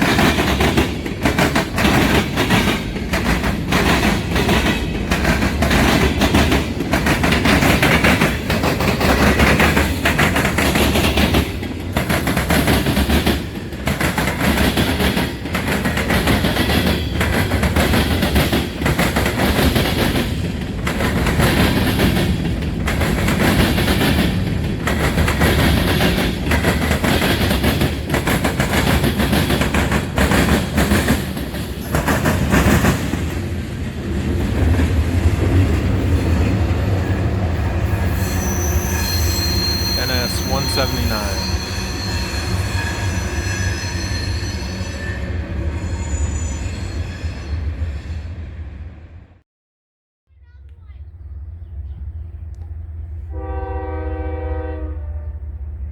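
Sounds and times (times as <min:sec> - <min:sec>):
train wheels clacking over rail joints: 0:00.0 - 0:33.5
freight train rumble and rattle: 0:00.0 - 0:49.1, 0:50.4 - 0:55.9.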